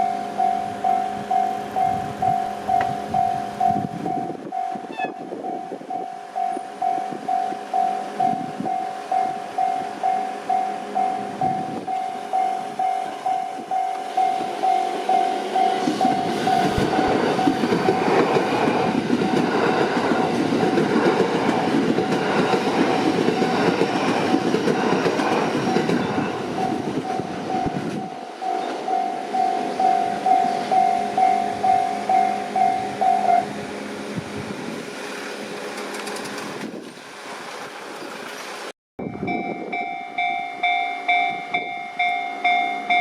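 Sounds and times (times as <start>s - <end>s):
level crossing warning bell: 0.0s - 18.2s, 25.6s - 33.6s, 39.0s - 43.0s
train passing over crossing: 0.0s - 43.0s.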